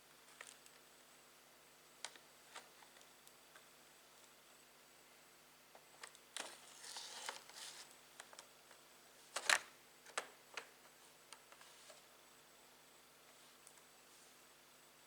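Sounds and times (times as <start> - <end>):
scraping rustle: 6.4 - 7.9.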